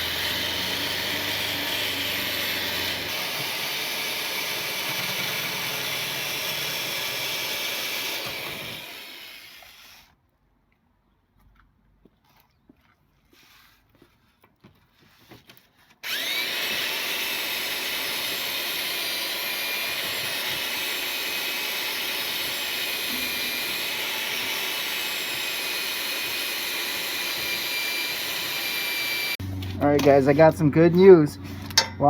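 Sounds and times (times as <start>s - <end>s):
motor tool whirring and whining: 0.0s - 10.1s, 16.0s - 30.5s.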